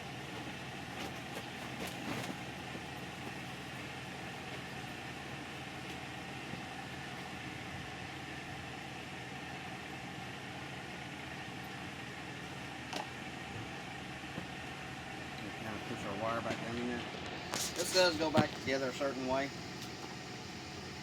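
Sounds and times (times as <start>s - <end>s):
mechanical hum: 0.0s - 21.0s.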